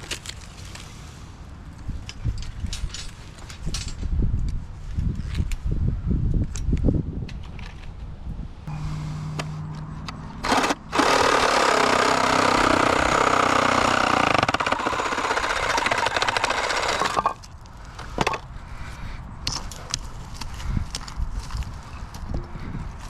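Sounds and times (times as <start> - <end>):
low steady hum: 8.6 - 18.0
power hammer hammering: 10.4 - 17.4.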